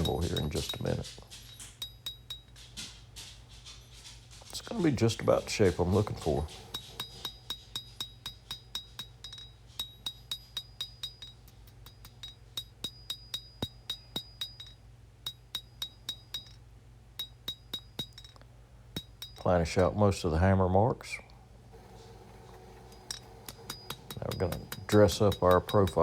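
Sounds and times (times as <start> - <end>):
hammer striking steel on anvil: 5.3 - 16.6, 21.8 - 26.0.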